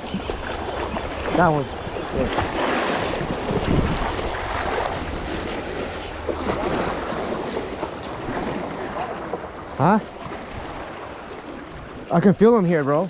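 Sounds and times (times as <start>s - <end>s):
wind noise on microphone: 0.0s - 7.4s
lake waves washing in: 0.0s - 13.0s.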